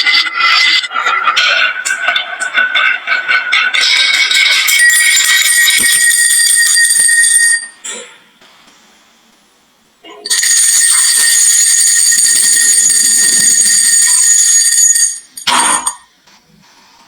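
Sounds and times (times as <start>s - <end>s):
marbles rolling with metallic ringing: 3.6s - 7.8s, 10.3s - 16.0s.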